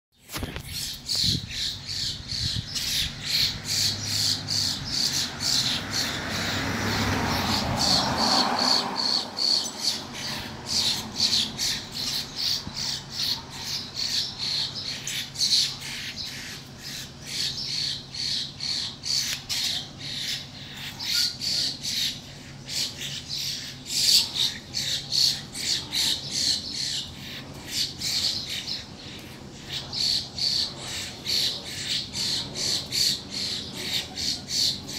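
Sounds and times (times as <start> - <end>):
birds squawking harshly: 0.2 - 34.9
broad rushing noise: 2.2 - 12.8.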